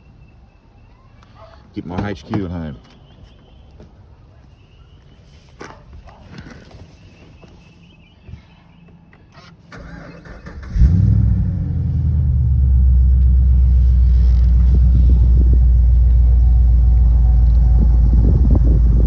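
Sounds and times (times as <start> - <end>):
car engine starting and idling: 9.4 - 19.0.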